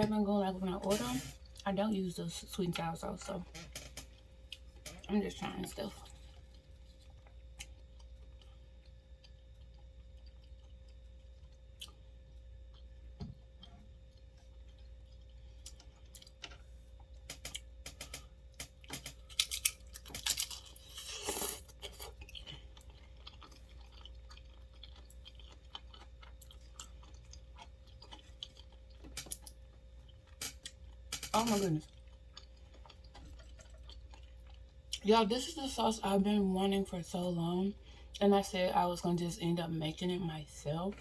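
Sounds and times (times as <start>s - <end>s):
person crunching chips: 19.0s - 29.6s.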